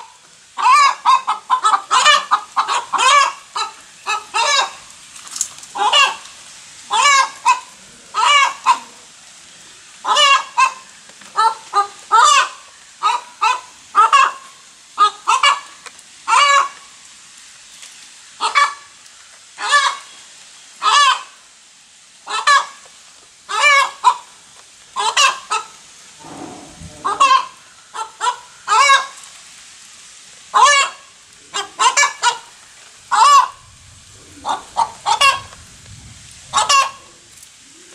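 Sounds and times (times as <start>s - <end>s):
hen cackling: 0.6s - 4.8s, 5.8s - 6.2s, 6.9s - 9.0s, 10.0s - 10.8s, 11.4s - 15.7s, 16.3s - 16.8s, 18.4s - 18.8s, 20.8s - 21.3s, 23.5s - 24.3s, 25.0s - 29.1s, 30.5s - 35.6s, 36.5s - 37.1s.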